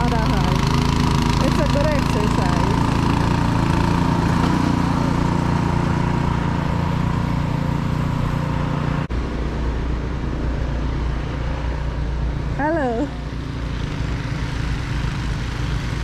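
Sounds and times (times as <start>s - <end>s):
deep steady rumble: 0.0s - 16.0s
engine running: 0.0s - 16.0s.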